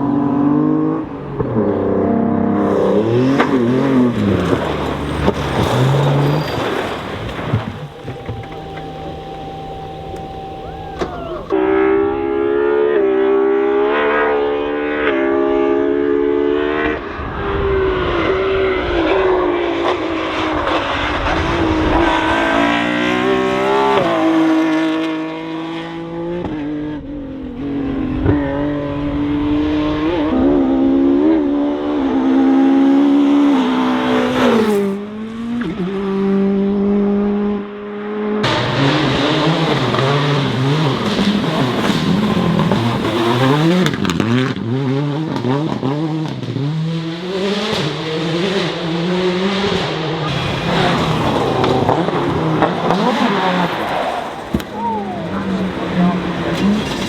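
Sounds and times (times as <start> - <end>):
rally car engines revving: 0.0 - 57.0.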